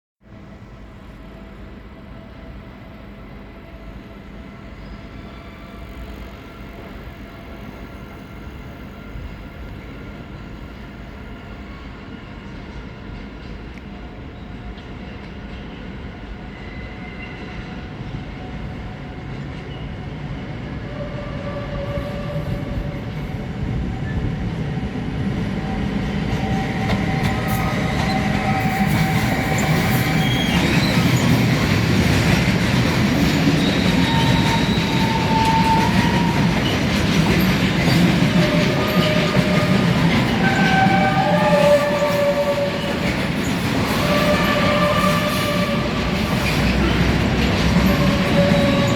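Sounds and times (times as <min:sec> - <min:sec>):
freight train wheels rolling: 0:17.3 - 0:48.9
wheels squealing on rails: 0:20.7 - 0:24.3, 0:25.5 - 0:48.9.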